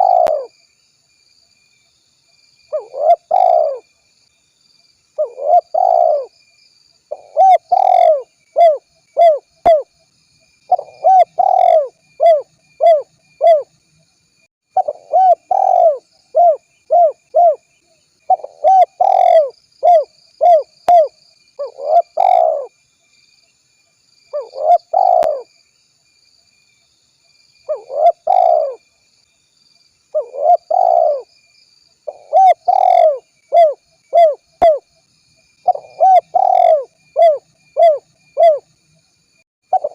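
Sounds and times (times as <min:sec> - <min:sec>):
dove cooing: 0:00.0 - 0:00.5, 0:02.7 - 0:03.8, 0:05.2 - 0:06.3, 0:07.1 - 0:09.9, 0:10.7 - 0:13.7, 0:14.8 - 0:17.6, 0:18.3 - 0:22.7, 0:24.3 - 0:25.5, 0:27.7 - 0:28.8, 0:30.1 - 0:31.3, 0:32.1 - 0:34.8, 0:35.6 - 0:38.7.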